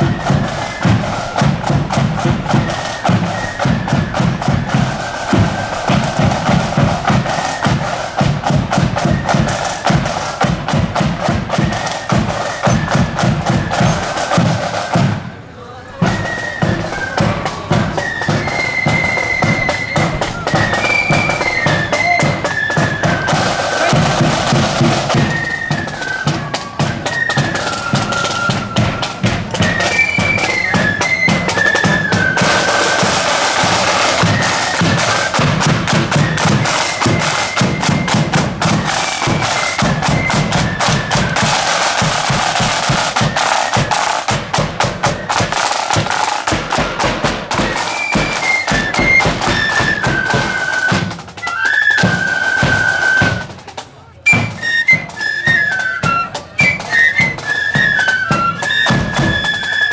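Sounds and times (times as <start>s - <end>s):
rapid snare drumming: 0.0s - 15.4s, 16.0s - 59.9s
flute melody: 0.0s - 59.9s.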